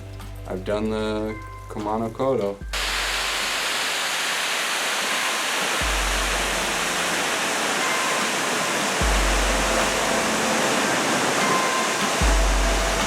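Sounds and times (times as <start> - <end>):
soft background music: 0.0 - 2.8, 5.8 - 13.0
waterfall rushing: 2.8 - 13.0.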